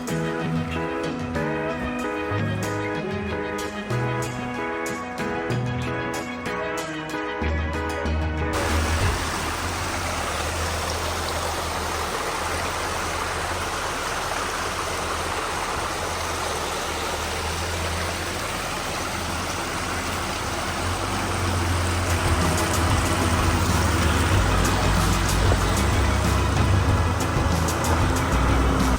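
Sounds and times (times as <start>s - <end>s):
engine running low hum: 7.4s - 28.9s
steady rushing noise: 8.6s - 28.9s.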